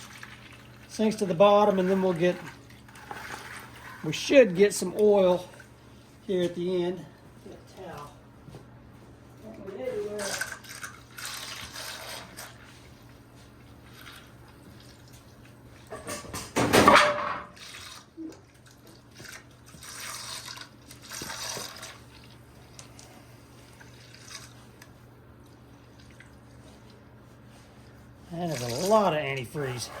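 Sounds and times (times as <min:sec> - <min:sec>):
liquid splashing into a bucket: 0:00.0 - 0:04.0, 0:10.2 - 0:13.1, 0:17.5 - 0:23.1, 0:28.5 - 0:29.1.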